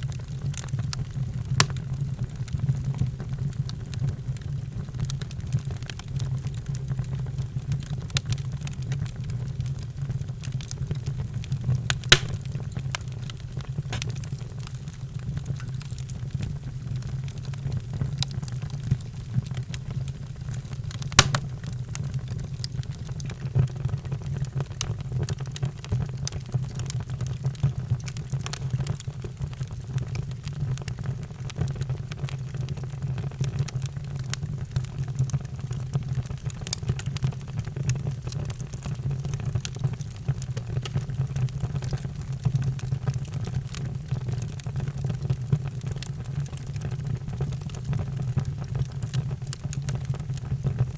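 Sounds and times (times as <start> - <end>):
fireplace fire crackling: 0.0 - 50.9
sharp pops of fire: 1.5 - 1.9, 11.8 - 23.4.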